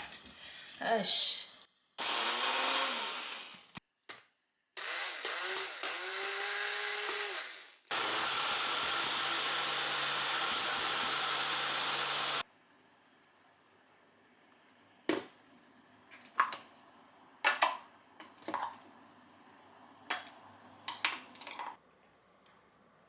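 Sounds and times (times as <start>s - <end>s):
kitchen appliance motor running: 2.0s - 3.8s, 4.8s - 12.4s.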